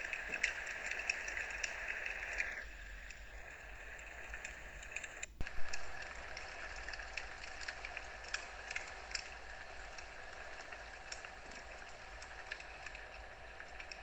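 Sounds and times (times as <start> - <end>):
wood fire crackling and popping: 0.0 - 6.0.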